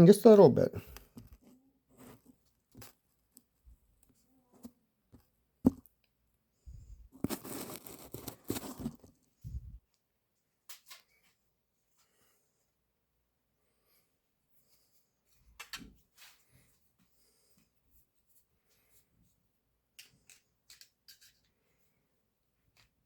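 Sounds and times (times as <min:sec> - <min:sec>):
rustling and scraping: 0:01.1 - 0:03.4, 0:06.7 - 0:09.8.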